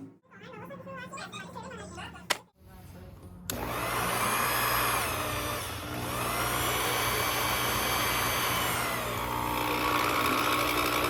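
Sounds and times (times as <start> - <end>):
small electric motor whining: 3.5 - 11.0.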